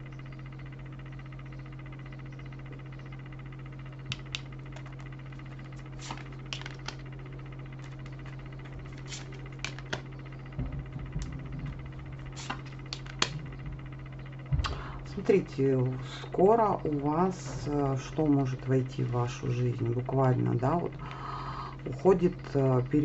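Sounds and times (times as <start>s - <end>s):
steady low hum: 0.0s - 23.0s
cards clicking and snapping: 4.1s - 5.1s, 6.0s - 7.1s, 7.8s - 10.1s, 12.4s - 13.4s.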